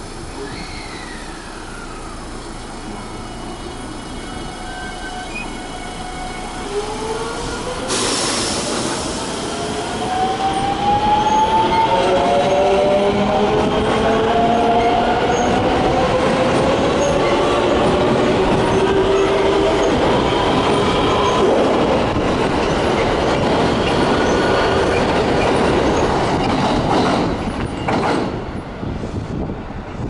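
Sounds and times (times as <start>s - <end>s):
burst of hiss: 7.8s - 9.5s.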